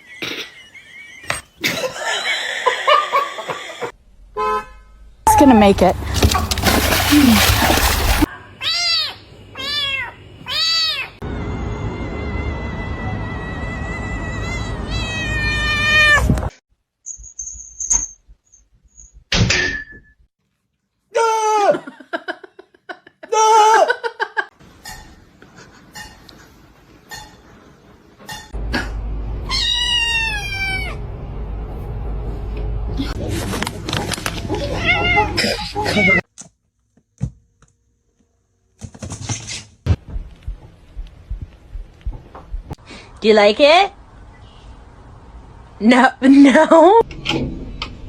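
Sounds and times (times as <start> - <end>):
cat meowing: 29.5 - 31.0.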